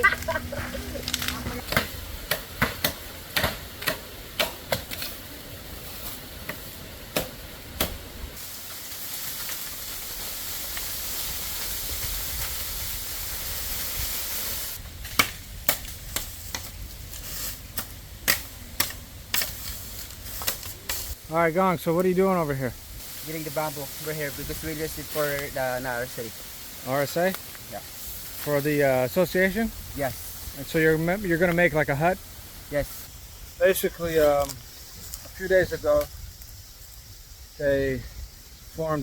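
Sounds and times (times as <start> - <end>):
steady high hiss: 0.0 - 39.0
bamboo knocking and cracking: 1.0 - 5.3, 6.0 - 8.1, 14.9 - 21.1.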